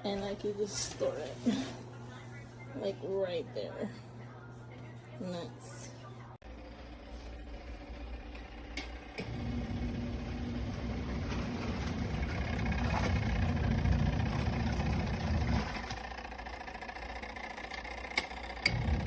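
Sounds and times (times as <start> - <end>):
washing machine motor humming: 6.4 - 19.0.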